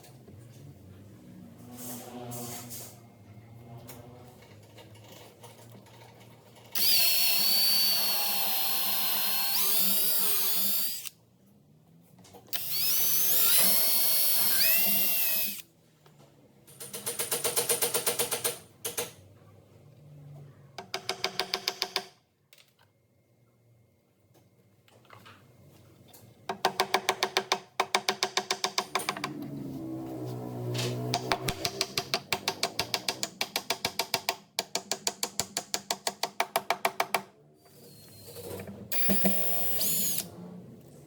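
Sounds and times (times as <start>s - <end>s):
power drill running: 6.8s - 11.1s, 12.5s - 15.6s, 38.9s - 40.3s.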